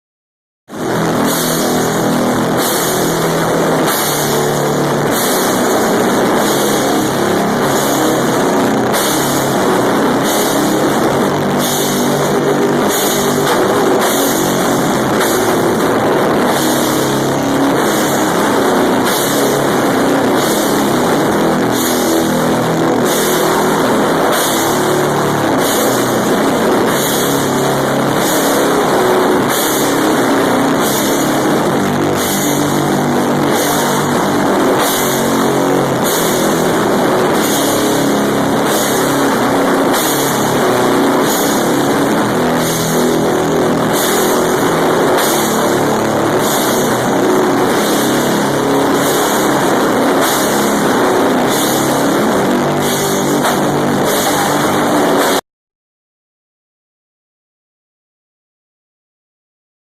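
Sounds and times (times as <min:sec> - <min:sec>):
cymbal crashes: 0:00.7 - 0:55.4
live band playing distorted rock: 0:00.7 - 0:55.4.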